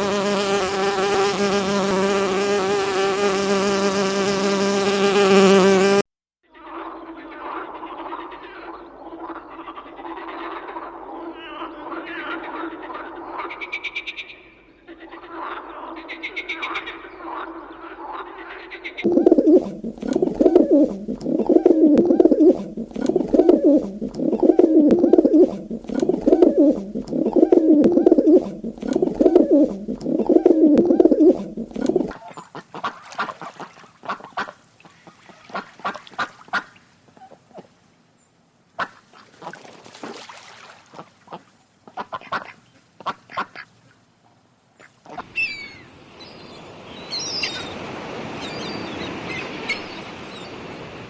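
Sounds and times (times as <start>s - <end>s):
animal croaking call: 6.6s - 32.4s
repeated pulsed animal calls: 19.0s - 32.3s, 45.2s - 50.8s.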